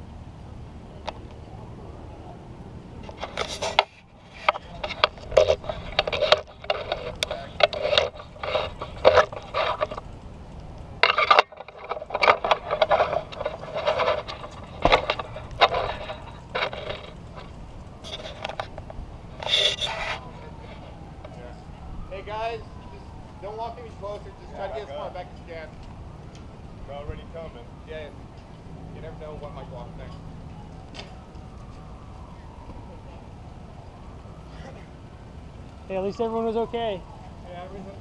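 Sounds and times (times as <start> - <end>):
steady background noise: 0.0 - 38.0
knocks and scrapes: 3.0 - 10.2, 11.0 - 20.9.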